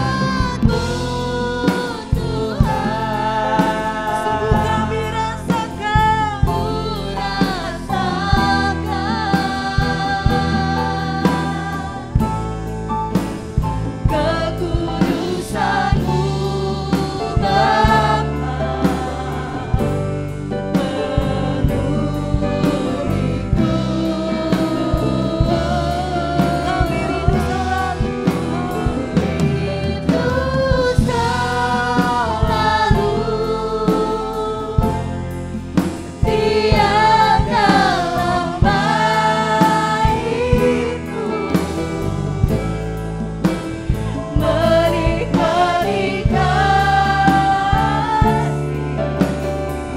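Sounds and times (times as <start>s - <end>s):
person singing: 0.0s - 12.4s, 14.0s - 35.2s
backing singers: 0.0s - 12.7s, 13.4s - 49.9s
drum kit: 0.0s - 49.9s
worship band playing: 0.0s - 49.9s.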